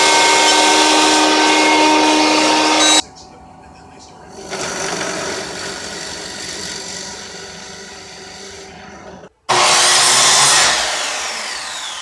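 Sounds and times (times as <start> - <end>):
electric saw motor whining: 0.0 - 3.0, 4.4 - 12.0
saw cutting wood: 0.0 - 3.0, 4.3 - 12.0.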